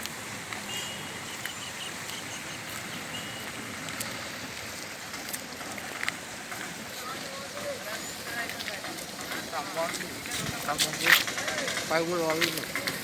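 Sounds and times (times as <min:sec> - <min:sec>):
water hissing: 0:00.0 - 0:13.0
high chirps: 0:00.6 - 0:03.6.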